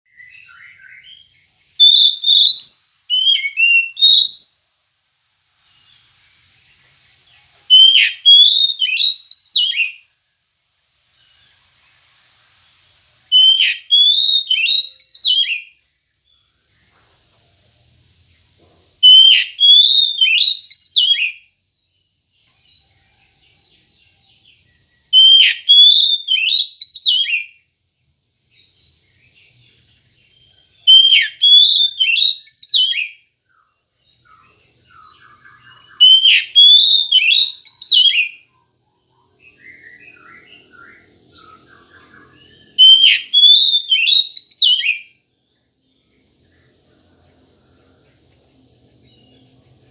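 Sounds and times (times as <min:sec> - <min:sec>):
bird whistling song: 0:00.1 - 0:04.7, 0:06.8 - 0:10.2, 0:13.2 - 0:16.9, 0:19.0 - 0:49.9
faint soft twittering: 0:45.2 - 0:49.9.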